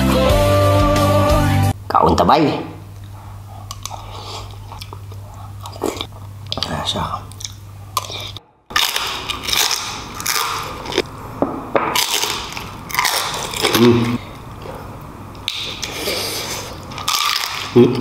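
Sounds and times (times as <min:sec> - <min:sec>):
person chewing crunchy food: 0:03.0 - 0:11.1, 0:11.9 - 0:18.0.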